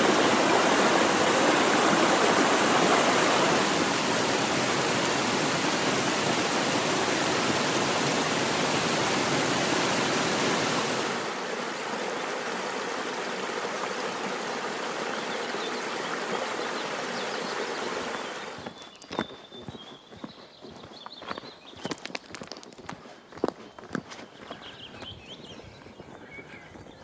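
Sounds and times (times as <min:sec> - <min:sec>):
stream rushing over rocks: 0:00.0 - 0:18.8.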